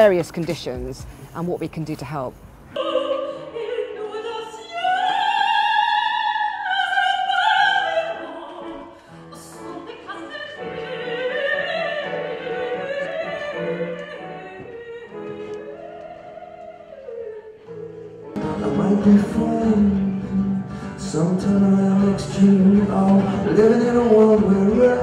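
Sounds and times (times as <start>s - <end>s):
operatic singing: 2.8s - 25.0s
soft instrumental accompaniment: 8.3s - 25.0s.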